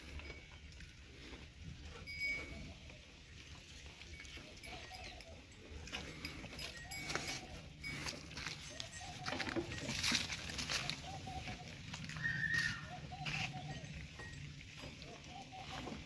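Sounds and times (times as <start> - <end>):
clinks and knocks: 4.4 - 11.0
livestock calling: 6.8 - 16.0.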